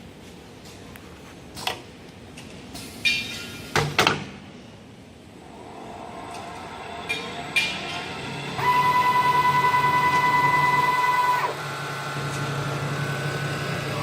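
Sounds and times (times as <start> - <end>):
machine hum: 5.3 - 14.0.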